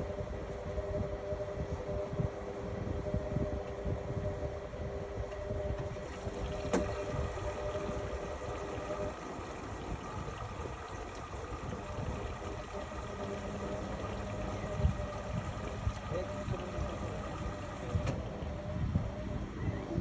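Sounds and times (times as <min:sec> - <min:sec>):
steady hum: 0:00.0 - 0:20.0
washing machine rumbling: 0:05.4 - 0:19.2.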